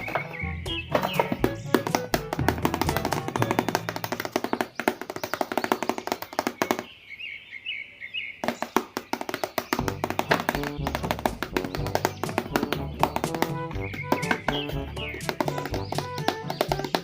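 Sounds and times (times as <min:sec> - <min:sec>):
high chirping notes: 0:00.0 - 0:04.8, 0:09.8 - 0:17.0
tapping clicking percussion beat: 0:00.0 - 0:06.9, 0:08.4 - 0:17.0.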